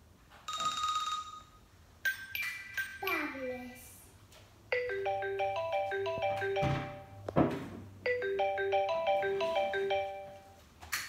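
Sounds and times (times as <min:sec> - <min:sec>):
marimba ringtone melody: 0:04.7 - 0:07.3, 0:08.0 - 0:10.6.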